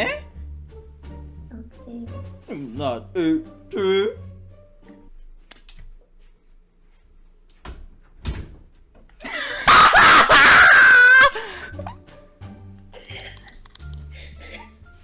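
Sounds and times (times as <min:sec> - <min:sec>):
person screaming: 0:09.6 - 0:11.8.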